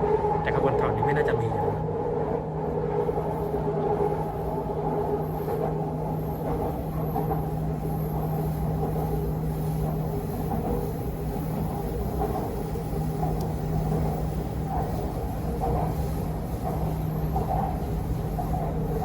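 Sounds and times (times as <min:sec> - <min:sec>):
metro train rumbling: 0:00.0 - 0:19.0.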